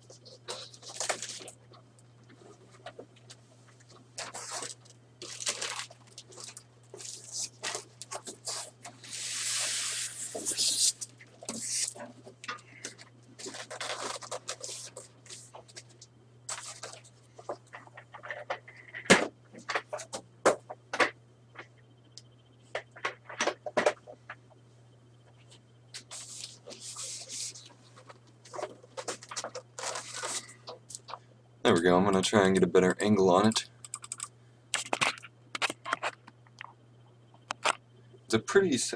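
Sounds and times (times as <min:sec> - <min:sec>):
cardboard packaging rustling: 0:00.2 - 0:01.6, 0:04.2 - 0:10.8, 0:13.0 - 0:15.9, 0:26.0 - 0:30.6.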